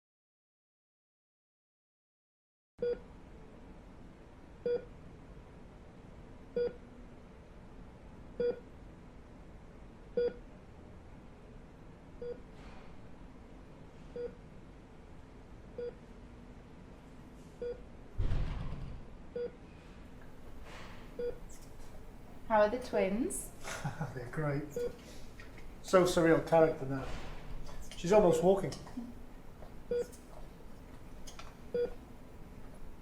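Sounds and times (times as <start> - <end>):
heart monitor beeping: 12.2 - 12.4, 14.2 - 14.4, 21.2 - 21.6, 29.6 - 30.4, 31.7 - 32.0
rustling thump: 18.2 - 19.1.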